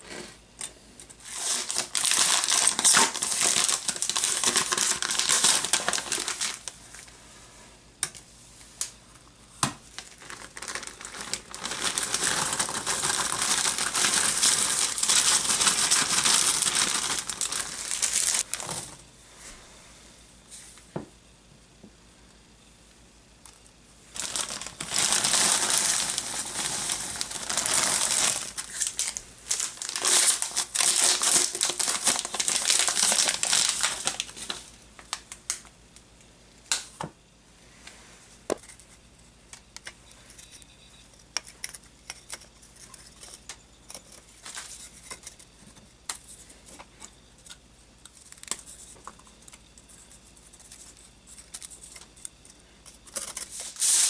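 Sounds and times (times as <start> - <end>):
wrapping crumpling and tearing: 1.2 - 7.1, 10.0 - 19.0, 24.1 - 35.6.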